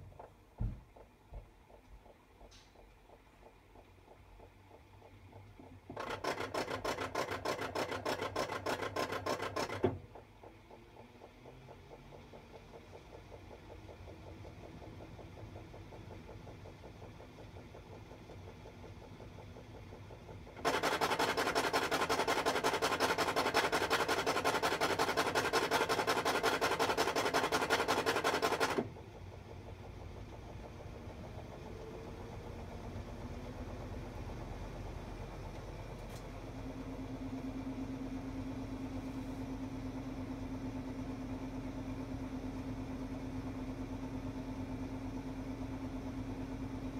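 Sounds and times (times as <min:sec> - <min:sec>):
washing machine spinning hum: 0:00.0 - 0:46.9
loud rapid rattling: 0:20.6 - 0:28.8.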